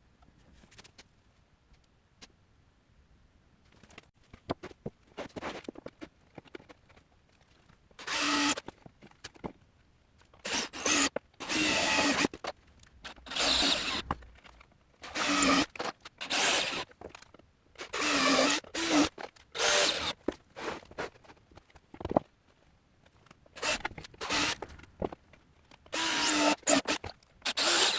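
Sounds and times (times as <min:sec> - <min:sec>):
power drill bursts: 0:08.0 - 0:08.6, 0:10.5 - 0:12.3, 0:13.2 - 0:14.1, 0:15.0 - 0:16.8, 0:17.9 - 0:20.2, 0:23.6 - 0:24.6, 0:25.9 - 0:27.9.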